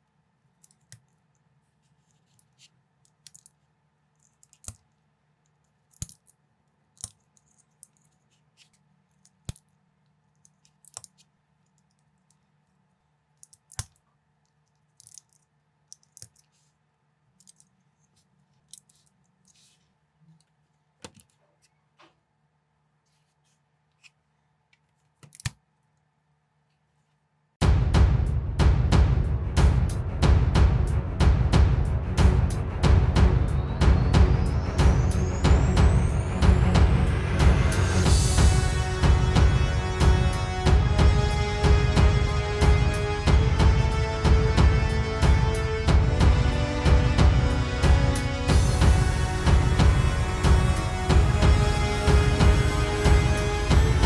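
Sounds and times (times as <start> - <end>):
plastic bricks clicking: 4.3 - 4.9, 5.9 - 6.4
loud music with drums: 27.6 - 54.0.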